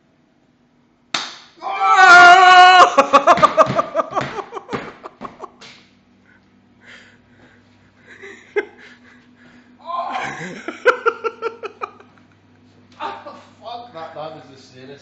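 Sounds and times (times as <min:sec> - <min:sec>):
person yelling in pain: 0:01.6 - 0:03.2, 0:09.8 - 0:10.6.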